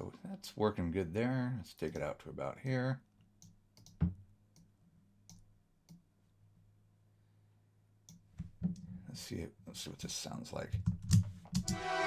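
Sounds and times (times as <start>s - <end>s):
computer mouse clicking: 3.4s - 4.0s.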